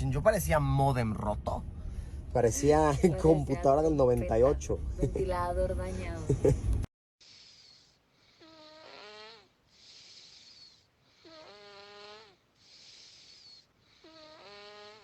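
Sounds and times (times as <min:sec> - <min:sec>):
breathy hiss: 0:07.2 - 0:15.0
man snoring: 0:07.2 - 0:15.0.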